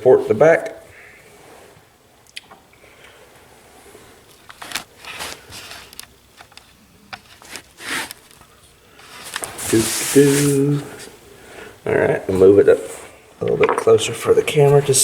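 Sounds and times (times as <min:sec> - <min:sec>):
rifle scraping and rustling: 0:04.5 - 0:06.0, 0:09.0 - 0:11.1.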